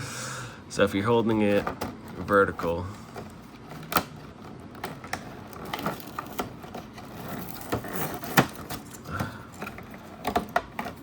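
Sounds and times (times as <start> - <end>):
cardboard packaging clicks and taps: 3.8 - 11.0.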